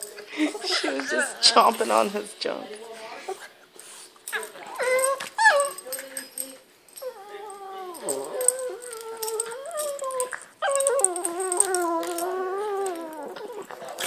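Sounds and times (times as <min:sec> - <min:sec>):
dog whining: 0:04.3 - 0:14.0.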